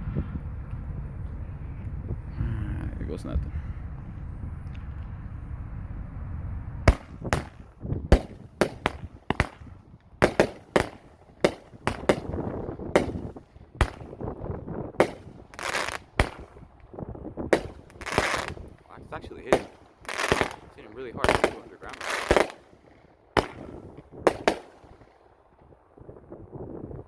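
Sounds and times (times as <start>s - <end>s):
firework bangs: 6.8s - 25.8s
hissing crackle of firework stars: 6.9s - 25.5s.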